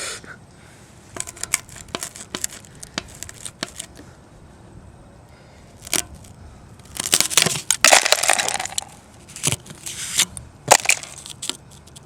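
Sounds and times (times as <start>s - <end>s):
ice crunching and cracking: 1.2s - 4.0s, 5.8s - 12.0s.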